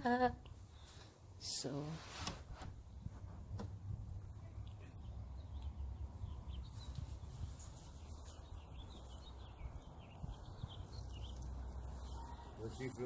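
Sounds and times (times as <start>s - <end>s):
wind rumble on microphone: 2.4s - 11.8s
small birds chirping: 4.1s - 13.0s.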